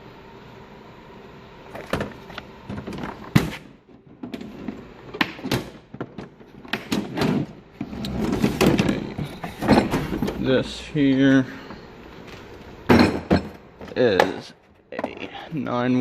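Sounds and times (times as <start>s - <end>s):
drawer contents rattling: 6.0s - 10.5s
steel drawers sliding: 6.4s - 10.6s.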